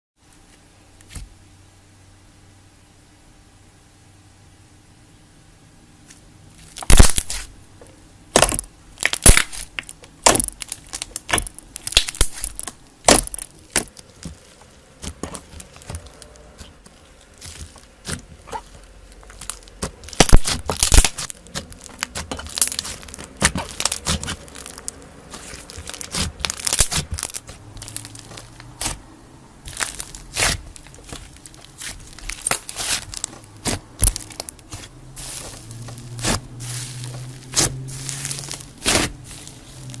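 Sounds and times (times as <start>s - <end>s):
slime crackling and popping: 6.6s - 7.6s, 8.3s - 40.0s.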